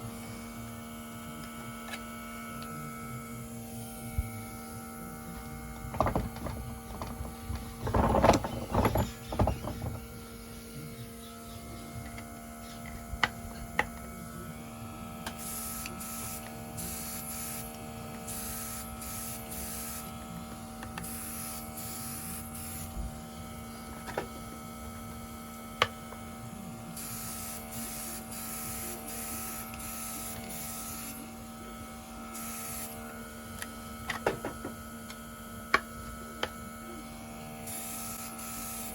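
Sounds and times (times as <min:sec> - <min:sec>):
compressor humming: 0:00.0 - 0:38.9
clattering knocks: 0:05.8 - 0:10.1.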